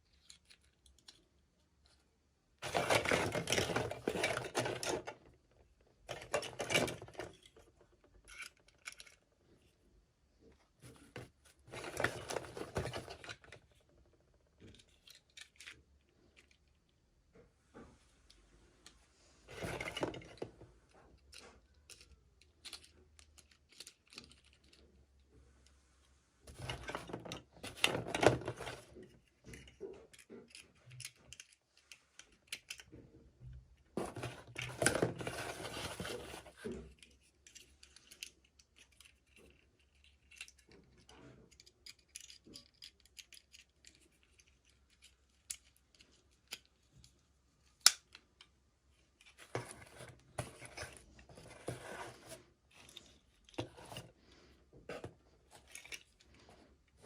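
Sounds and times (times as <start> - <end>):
packaging crinkling and rustling: 2.6 - 5.2.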